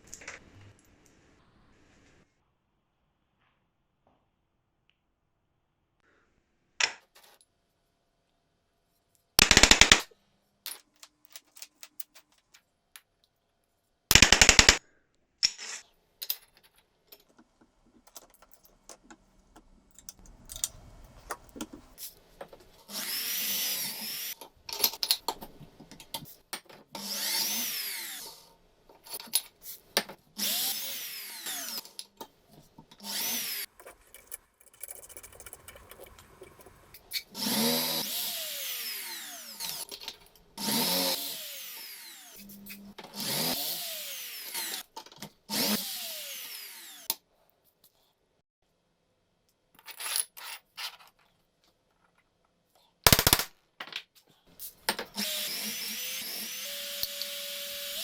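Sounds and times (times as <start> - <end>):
metal parts clattering: 18.0 - 19.2, 33.7 - 37.2.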